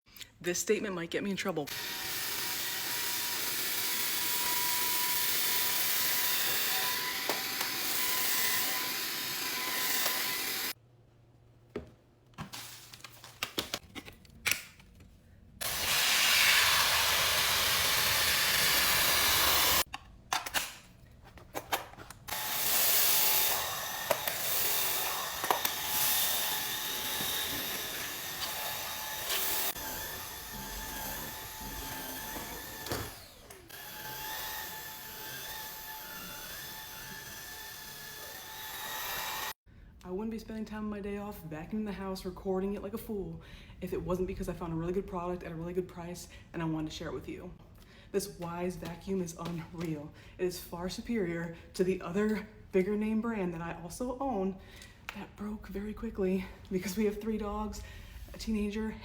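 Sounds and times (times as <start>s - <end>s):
stick vacuum whining: 1.7s - 10.8s, 15.6s - 20.6s, 21.6s - 39.6s.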